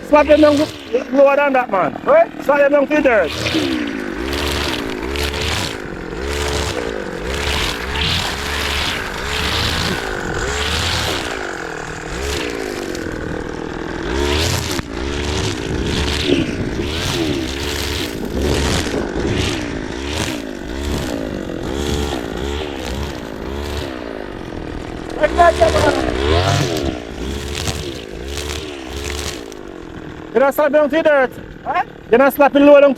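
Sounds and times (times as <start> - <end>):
string trimmer revving: 0.0 - 32.9
line swishing through weeds: 0.2 - 1.1, 3.1 - 13.4, 14.0 - 24.0, 25.2 - 29.7.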